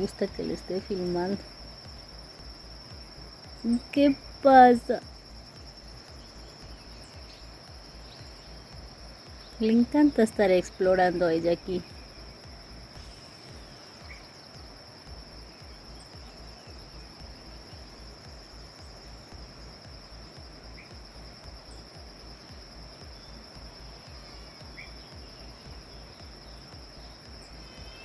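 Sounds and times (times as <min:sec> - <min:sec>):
bird chirps: 0:00.0 - 0:28.0
insects trilling: 0:00.0 - 0:28.0.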